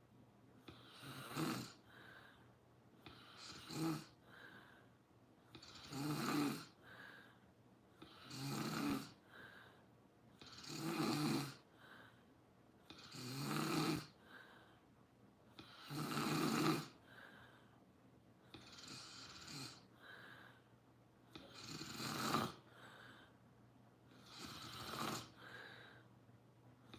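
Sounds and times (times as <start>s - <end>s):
person snoring loudly: 0.7s - 1.8s, 3.1s - 4.2s, 5.5s - 6.8s, 8.0s - 9.2s, 10.4s - 11.6s, 12.9s - 14.2s, 15.6s - 17.0s, 18.5s - 19.9s, 21.3s - 22.6s, 24.2s - 25.5s.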